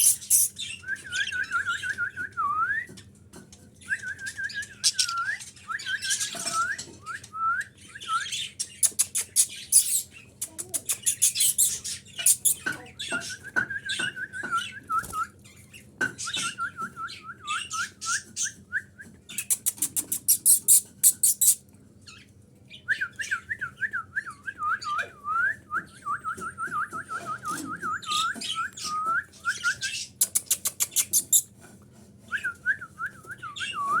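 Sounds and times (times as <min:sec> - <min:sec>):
budgerigars chirping and chattering: 0:00.0 - 0:02.0, 0:04.6 - 0:07.0, 0:07.7 - 0:14.8, 0:19.3 - 0:22.3, 0:27.3 - 0:31.5.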